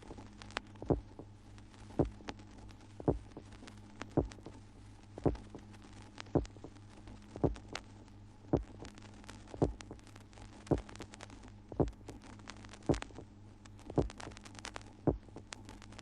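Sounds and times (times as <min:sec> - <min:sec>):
steady low hum: 0:00.0 - 0:16.0
heartbeat thumps: 0:00.8 - 0:01.2, 0:03.1 - 0:03.5, 0:04.2 - 0:04.4, 0:05.2 - 0:05.5, 0:06.4 - 0:06.7, 0:07.4 - 0:07.7, 0:08.6 - 0:08.8, 0:09.6 - 0:10.0, 0:10.7 - 0:10.9, 0:11.8 - 0:12.0, 0:12.9 - 0:13.1, 0:14.0 - 0:14.2, 0:15.1 - 0:15.3.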